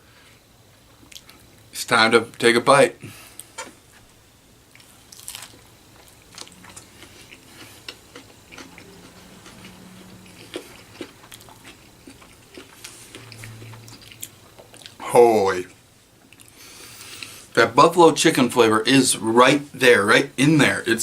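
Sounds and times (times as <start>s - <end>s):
chewing with crunches: 4.7s - 15.0s.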